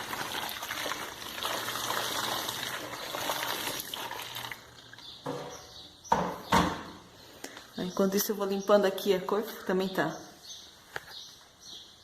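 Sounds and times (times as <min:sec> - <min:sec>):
water running and splashing: 0:00.0 - 0:05.0
sharp knocks: 0:05.2 - 0:07.0.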